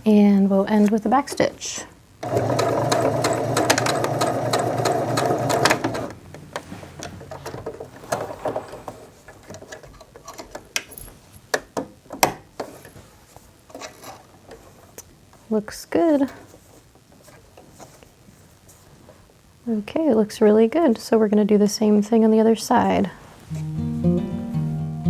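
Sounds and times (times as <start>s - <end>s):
sewing machine stitching: 2.2s - 6.2s.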